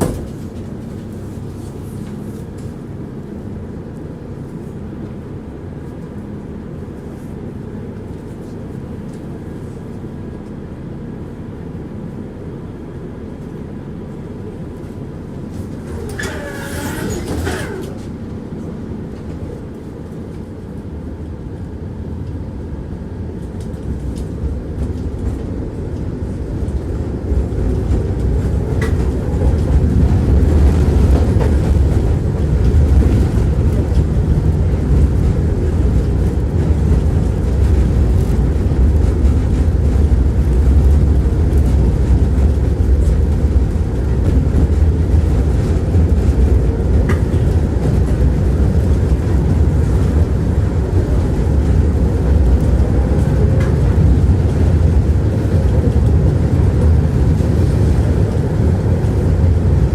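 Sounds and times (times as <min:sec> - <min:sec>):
tram wheels and motors rumbling: 0:00.0 - 0:59.9
wavering wheel squeal: 0:15.9 - 0:18.1.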